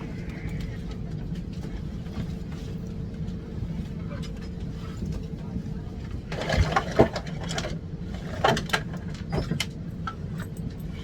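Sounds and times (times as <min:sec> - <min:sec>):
airliner engine hum: 0:00.0 - 0:04.0.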